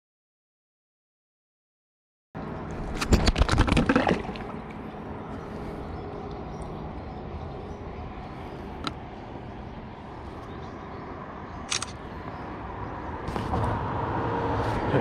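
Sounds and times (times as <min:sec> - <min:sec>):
low rumbling outdoor noise: 0:02.4 - 0:15.0
sharp clicks: 0:11.7 - 0:12.0.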